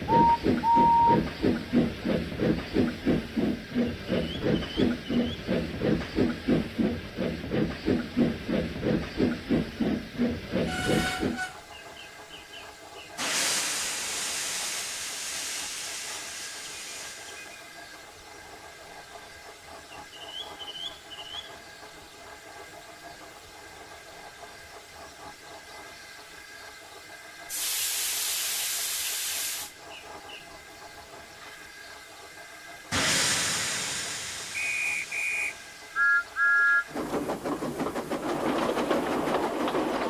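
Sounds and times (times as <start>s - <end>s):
locomotive running: 0.0s - 27.5s, 29.7s - 40.0s
steam release hiss: 13.1s - 17.6s, 27.5s - 29.8s, 32.8s - 36.1s.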